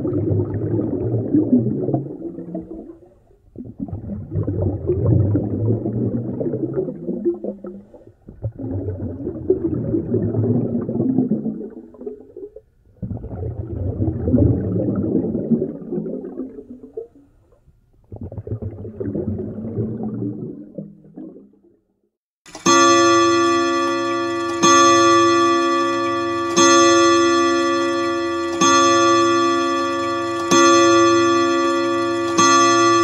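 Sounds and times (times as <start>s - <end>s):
bright clock-like chime: 22.5s - 33.0s.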